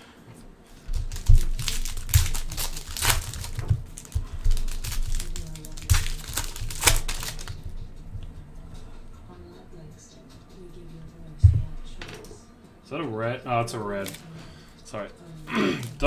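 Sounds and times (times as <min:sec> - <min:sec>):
plastic wrappers crinkling and tearing: 0:00.7 - 0:08.3, 0:13.7 - 0:14.4, 0:15.4 - 0:16.0.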